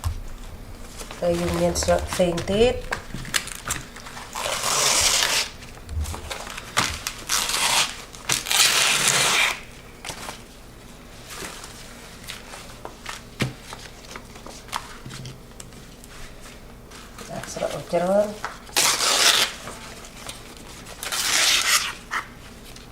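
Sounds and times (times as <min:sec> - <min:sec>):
dry rustling and crinkling: 0:00.0 - 0:08.9.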